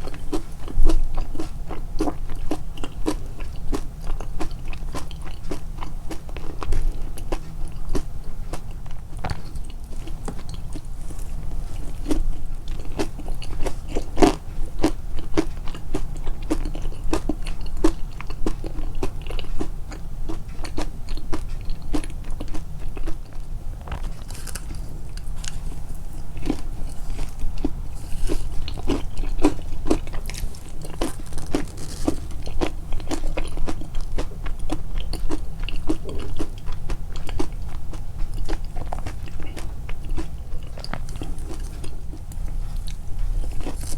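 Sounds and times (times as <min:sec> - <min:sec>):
chewing crunchy food: 0:00.0 - 0:43.9
low steady hum: 0:00.0 - 0:43.9.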